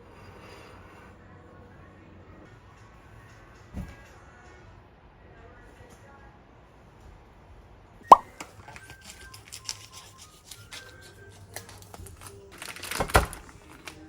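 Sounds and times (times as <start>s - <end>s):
sharp pop: 8.1s - 8.3s.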